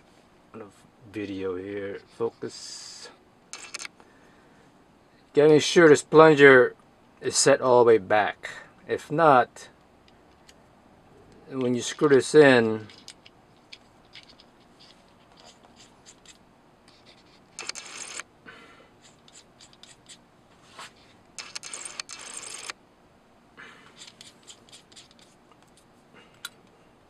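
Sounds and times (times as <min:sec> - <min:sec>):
small metal parts clicking and scraping: 0:03.5 - 0:03.9, 0:11.7 - 0:18.2, 0:19.0 - 0:20.2, 0:21.4 - 0:22.7, 0:24.0 - 0:25.4.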